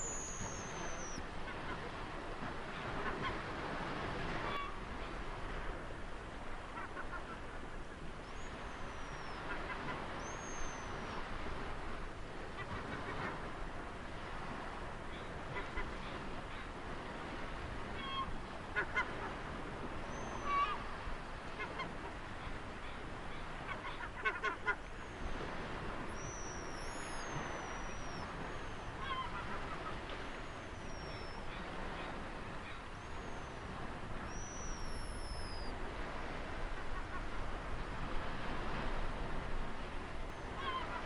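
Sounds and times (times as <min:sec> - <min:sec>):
ocean surf: 0:00.0 - 0:41.0.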